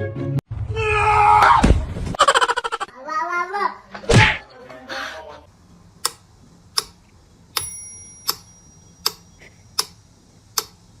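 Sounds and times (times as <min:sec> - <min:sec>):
bright bell ding: 0:07.6 - 0:09.0
clock-like ticking: 0:09.8 - 0:10.8.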